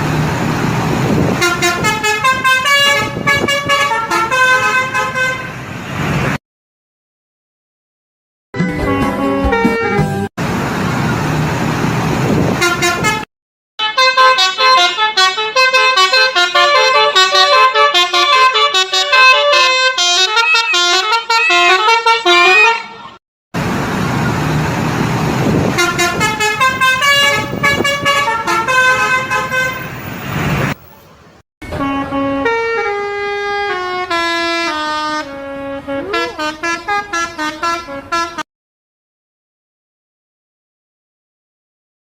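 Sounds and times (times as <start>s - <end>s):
bus engine running: 0.0s - 6.4s, 8.6s - 13.3s, 13.9s - 38.4s
musical multi-tone bus horn: 1.1s - 5.7s, 8.6s - 10.4s, 12.4s - 23.2s, 25.4s - 30.8s, 31.6s - 38.5s.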